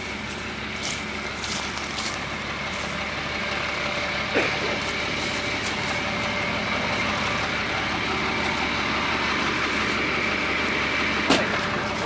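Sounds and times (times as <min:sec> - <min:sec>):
truck diesel engine running: 0:00.0 - 0:12.0.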